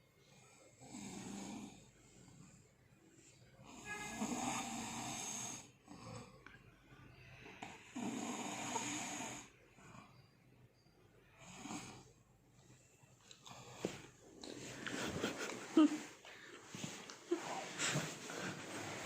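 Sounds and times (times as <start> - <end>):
snoring: 0.6 - 2.6, 3.6 - 6.5, 7.6 - 10.3, 11.4 - 12.2.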